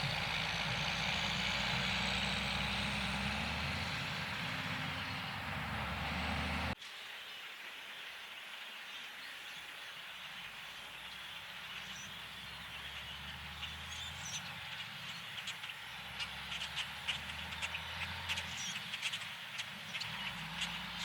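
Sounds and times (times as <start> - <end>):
distant machinery humming: 0.0 - 6.8, 10.9 - 21.0
bird chirps: 8.8 - 21.0.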